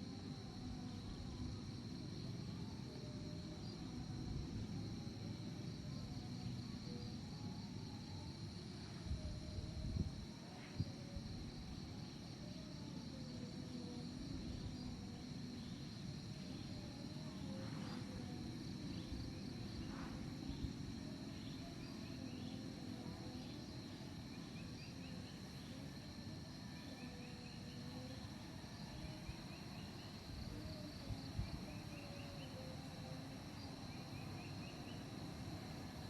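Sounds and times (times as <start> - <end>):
insects buzzing high-pitched: 0.0 - 36.0
insect chirps in rising runs: 13.8 - 36.0.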